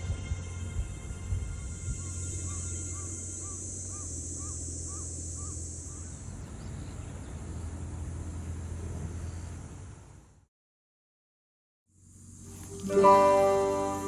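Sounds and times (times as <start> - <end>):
bird calling: 1.8 - 7.6
high hiss: 12.0 - 14.0.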